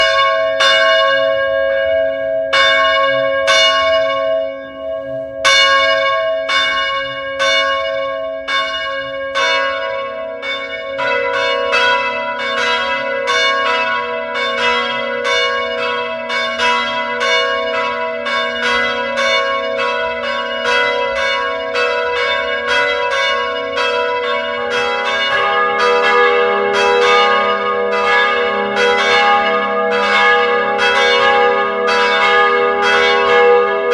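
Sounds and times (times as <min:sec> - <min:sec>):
church bells ringing a peal: 0:00.0 - 0:33.9
sustained hum of bells: 0:00.0 - 0:33.9.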